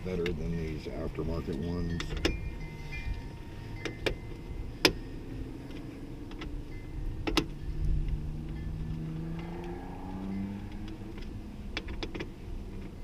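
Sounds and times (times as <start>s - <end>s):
sharp metallic clicks and knocks: 7.2s - 9.8s, 10.7s - 13.0s.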